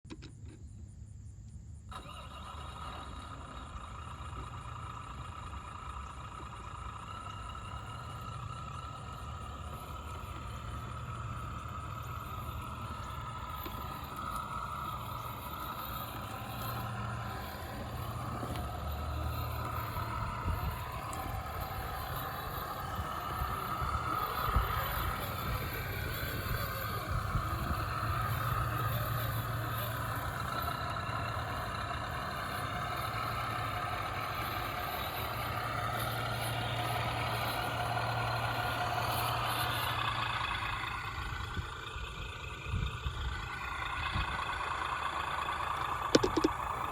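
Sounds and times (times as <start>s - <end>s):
toy car electric motor whining: 1.9s - 46.9s.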